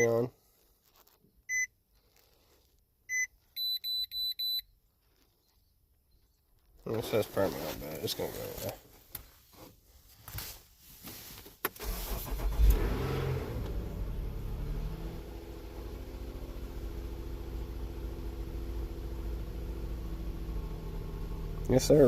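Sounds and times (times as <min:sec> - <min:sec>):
car engine starting and idling: 0:11.6 - 0:22.0.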